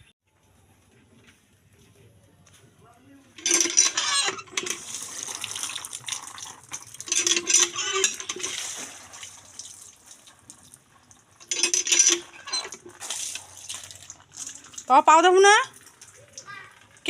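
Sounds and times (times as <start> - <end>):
clattering: 3.4 - 5.1, 6.7 - 8.6, 11.4 - 13.0
water splashing and pouring: 4.4 - 17.0.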